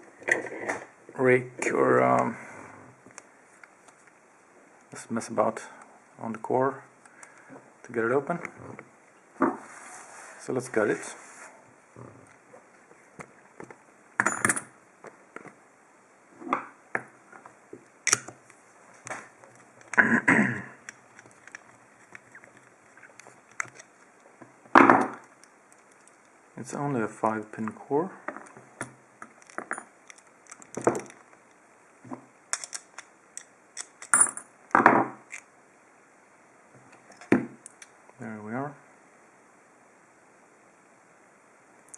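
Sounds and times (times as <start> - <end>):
padlock and tools clicking: 18.0 - 18.3, 28.4 - 31.3, 32.5 - 34.5
metal lock parts clinking: 20.8 - 24.0, 28.8 - 31.3, 32.5 - 34.5.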